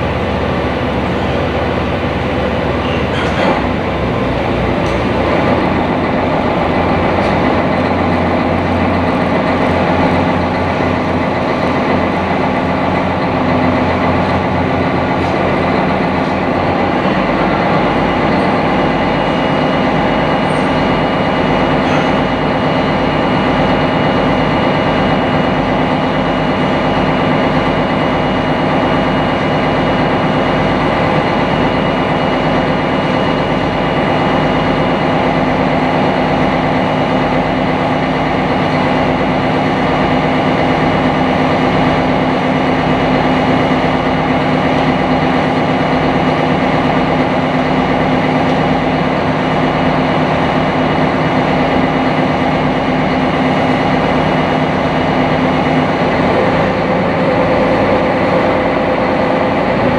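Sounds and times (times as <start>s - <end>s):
boat engine droning: 0.0s - 10.3s.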